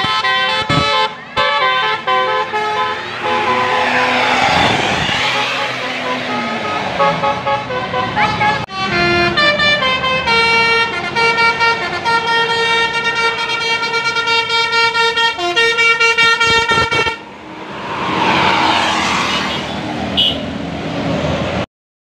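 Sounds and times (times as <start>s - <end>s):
bus multi-tone horn tune: 0.0s - 17.3s, 19.4s - 20.5s
rushing noise: 2.9s - 7.6s, 16.8s - 21.6s.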